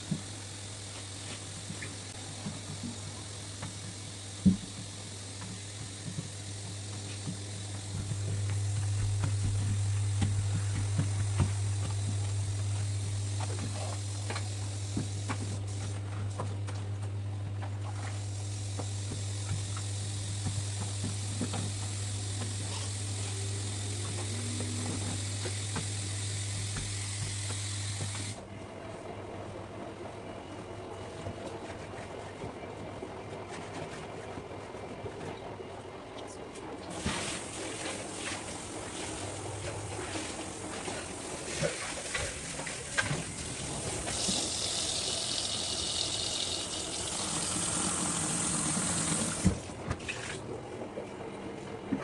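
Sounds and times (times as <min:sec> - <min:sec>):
water running from tap: 0:00.0 - 0:15.9, 0:18.0 - 0:28.4, 0:37.0 - 0:50.4
steady hiss: 0:00.0 - 0:16.5, 0:18.0 - 0:28.4, 0:36.9 - 0:49.6
low steady hum: 0:00.0 - 0:32.8.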